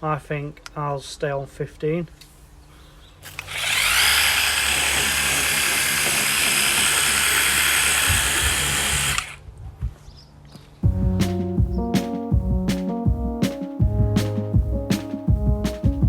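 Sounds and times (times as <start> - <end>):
pressure washer pump motor: 3.3 - 9.4.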